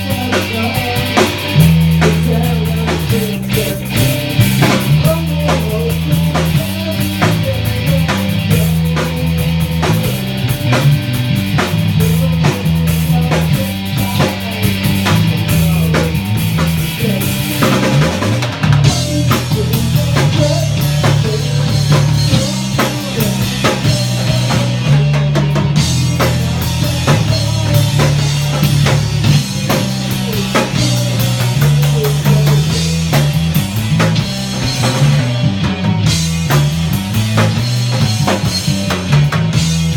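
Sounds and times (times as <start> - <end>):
driving drum kit: 0.0 - 39.9
guitar: 0.0 - 39.9
heavy bass line: 0.0 - 39.9
rock music: 0.0 - 39.9.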